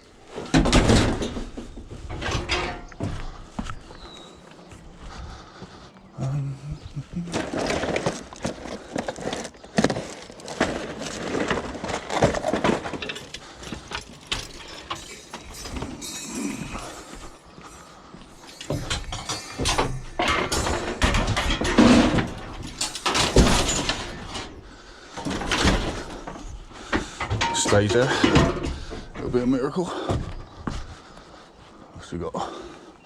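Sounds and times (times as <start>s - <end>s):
objects knocking and clanking: 0.4s - 3.4s, 7.3s - 30.5s.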